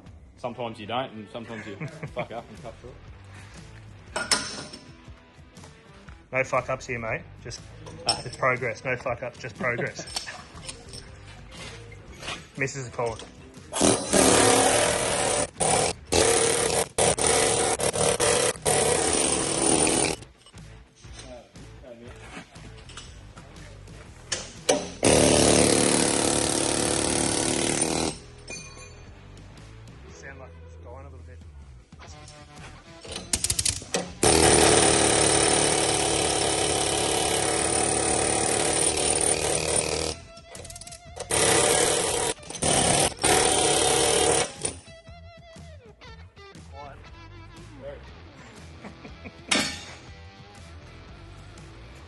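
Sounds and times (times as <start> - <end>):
power tool running on steel: 13.8 - 20.2, 24.7 - 28.2, 33.9 - 40.2, 41.2 - 44.8.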